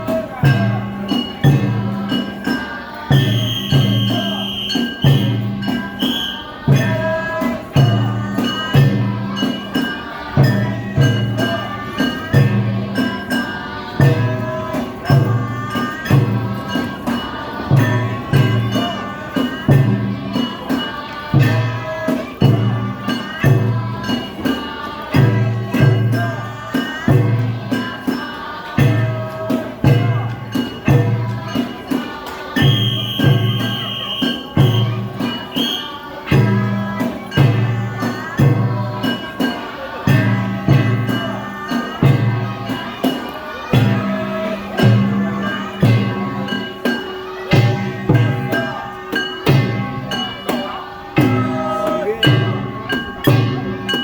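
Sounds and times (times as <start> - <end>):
deep taiko drum beat: 0.0 - 5.9, 6.7 - 28.2, 28.8 - 32.0, 42.0 - 42.8, 43.8 - 46.6, 47.5 - 54.0
ringing metal bells or cymbals: 0.0 - 54.0
wavering melody: 44.5 - 54.0.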